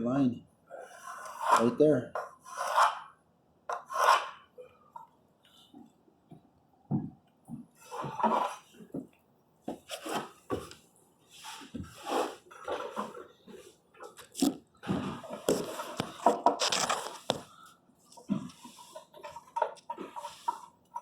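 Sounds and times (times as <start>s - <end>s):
tools scraping on wood: 0.7s - 5.1s, 7.8s - 8.9s, 9.8s - 10.8s, 11.4s - 21.0s
rustling: 15.4s - 17.6s.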